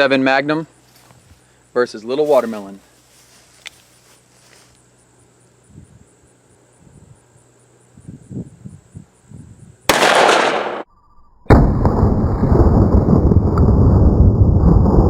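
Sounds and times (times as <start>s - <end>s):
revolver gunshot: 9.9s - 10.9s
loud low rumbling noise: 11.5s - 15.0s.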